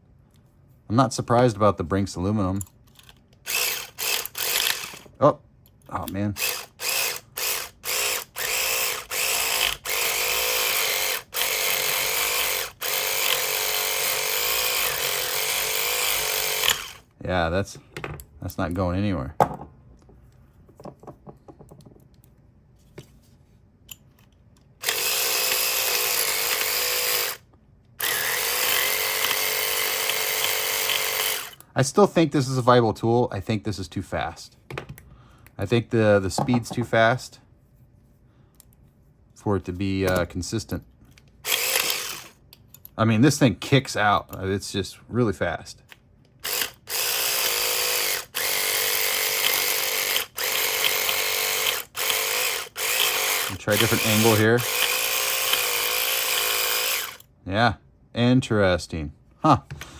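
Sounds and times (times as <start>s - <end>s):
electric lockpick buzzing: 2.9s - 5.1s, 6.4s - 17.1s, 24.8s - 31.6s, 41.4s - 42.4s, 46.4s - 57.3s.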